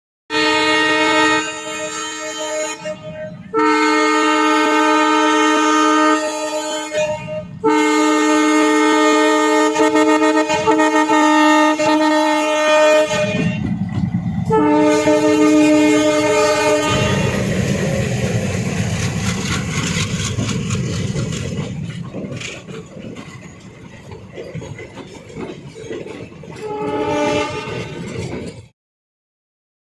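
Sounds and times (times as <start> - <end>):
train horn blasts: 0.3 - 13.8, 14.4 - 17.6, 26.6 - 28.2
train rumbling on rails: 0.3 - 28.7.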